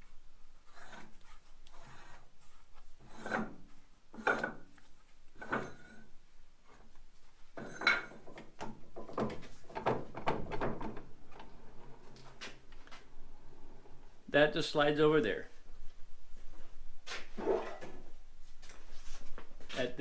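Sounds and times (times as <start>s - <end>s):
metal scraping and rasping: 3.0s - 4.5s, 17.4s - 18.0s.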